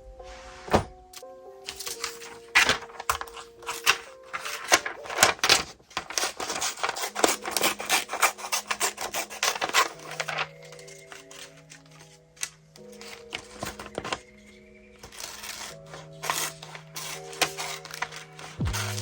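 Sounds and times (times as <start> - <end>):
soft background music: 0.0 - 19.0
scratchy rubbing on paper: 6.1 - 10.2.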